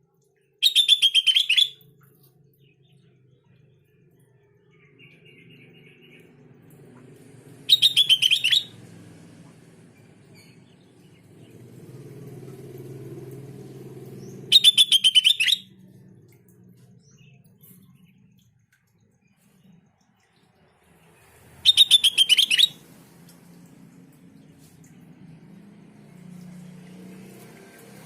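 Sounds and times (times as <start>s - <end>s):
bird calling rapid notes: 0.6s - 1.8s, 7.7s - 8.8s, 14.4s - 15.8s, 21.6s - 22.8s.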